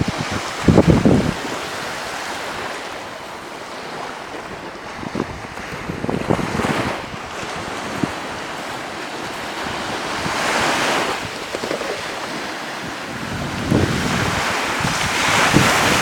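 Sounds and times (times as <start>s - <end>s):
small waves washing onto beach: 0.0s - 16.0s
wind buffeting microphone: 0.0s - 16.0s.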